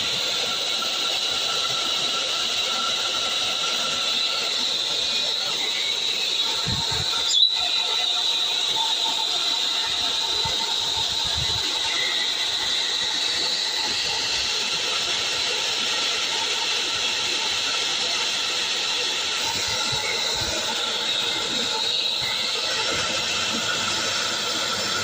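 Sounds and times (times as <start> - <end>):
hair dryer running: 0.0 - 25.0.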